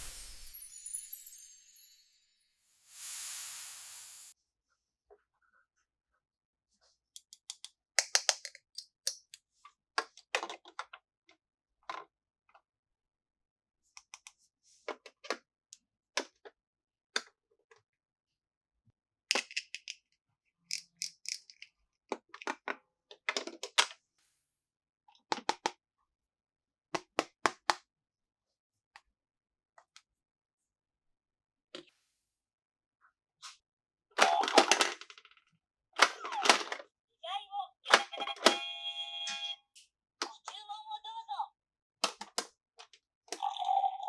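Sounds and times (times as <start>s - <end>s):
plastic toy pieces clicking: 7.2s - 9.4s, 19.3s - 20.1s, 20.7s - 22.7s, 34.2s - 35.3s.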